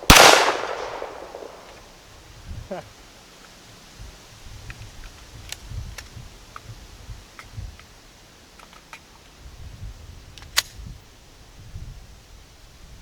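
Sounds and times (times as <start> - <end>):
sharp loud click: 0.0 - 1.9.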